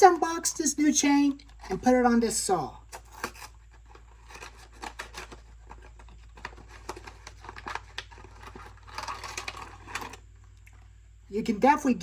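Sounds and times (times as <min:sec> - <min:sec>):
packaging clicks and crinkles: 0:02.9 - 0:10.8.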